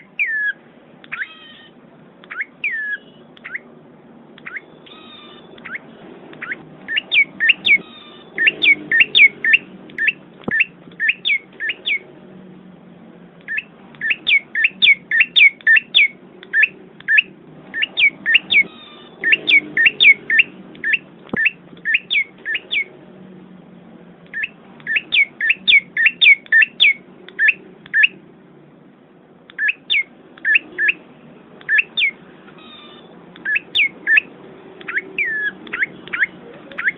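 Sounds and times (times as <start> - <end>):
small bird chirping: 0.0 - 3.7, 4.4 - 12.1, 13.5 - 22.9, 24.3 - 28.2, 29.5 - 31.0, 31.6 - 36.9.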